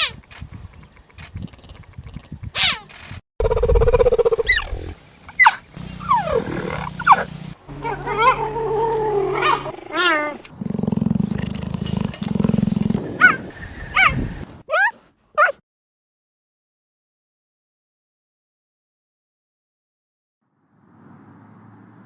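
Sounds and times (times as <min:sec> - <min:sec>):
animal cries and chirps: 0:05.4 - 0:10.4.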